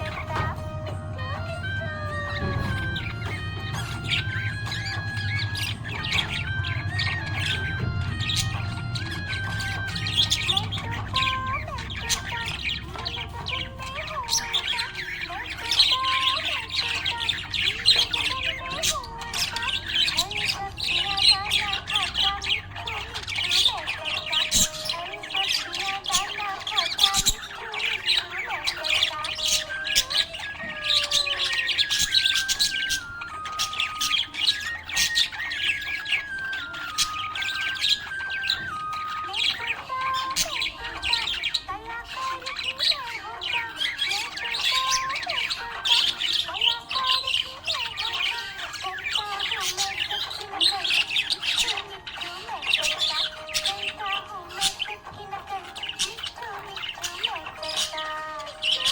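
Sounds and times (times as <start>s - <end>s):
budgerigar chirping and chattering: 0.0s - 58.9s.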